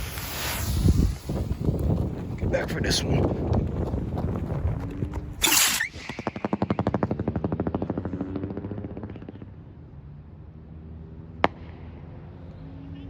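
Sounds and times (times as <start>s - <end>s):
firework strobe pops: 0.0s - 1.6s
sharp crack: 5.4s - 9.4s.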